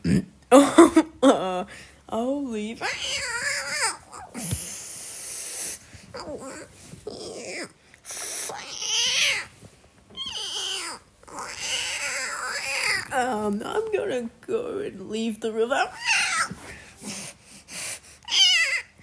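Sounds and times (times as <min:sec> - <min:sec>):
cat meowing and yowling: 0:02.8 - 0:04.6, 0:06.2 - 0:09.5, 0:10.2 - 0:13.1, 0:16.0 - 0:16.5, 0:18.3 - 0:19.0
cat hissing: 0:02.8 - 0:09.6, 0:10.2 - 0:13.1, 0:16.0 - 0:18.9.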